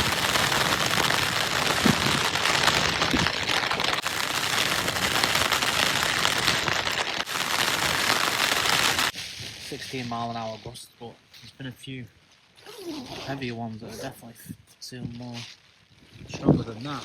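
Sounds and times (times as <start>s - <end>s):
heavy rain: 0.0s - 9.2s
gusting wind: 0.0s - 9.7s.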